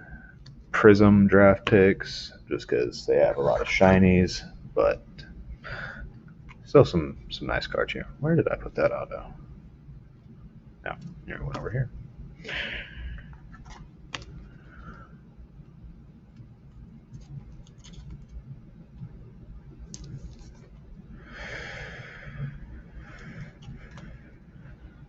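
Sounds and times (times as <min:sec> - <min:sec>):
card rustle: 0:17.2 - 0:18.4.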